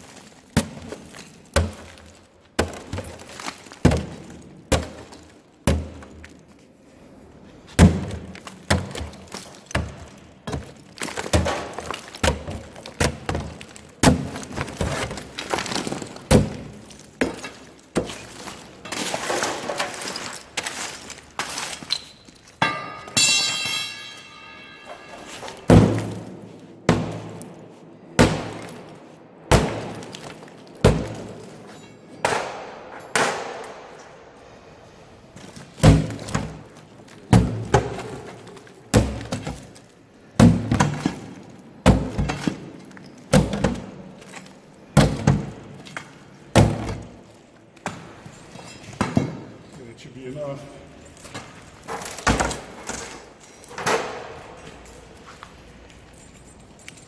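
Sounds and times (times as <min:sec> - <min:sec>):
strikes crunching brittle lining: 0:00.0 - 0:06.7, 0:07.7 - 0:22.6, 0:25.2 - 0:34.0
metallic ringing: 0:22.6 - 0:25.7.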